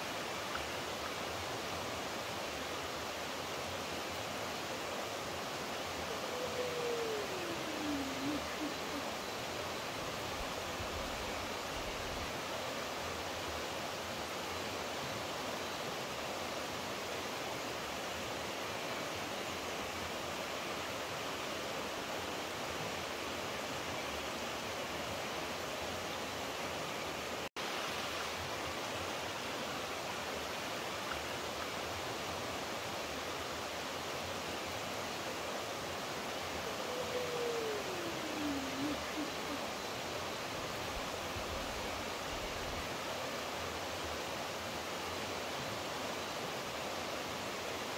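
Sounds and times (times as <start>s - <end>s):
flowing water rushing: 0.0s - 47.9s.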